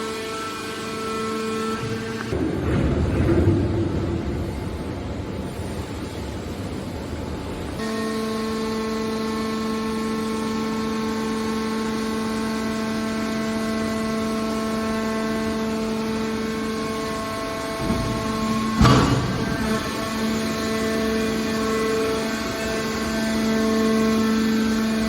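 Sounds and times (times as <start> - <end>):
hydraulic machinery rumbling: 0.9 - 7.8, 13.1 - 25.0.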